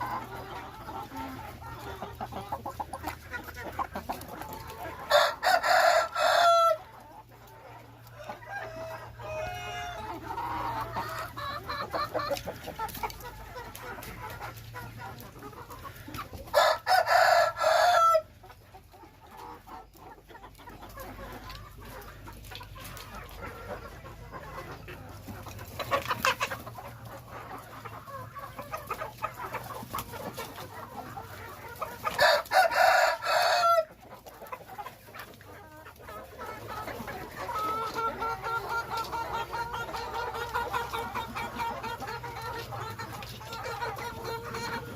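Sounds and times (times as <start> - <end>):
chickens clucking: 0.0 - 44.9
rooster crowing: 5.1 - 6.8, 8.2 - 10.0, 16.6 - 18.3, 32.2 - 33.9.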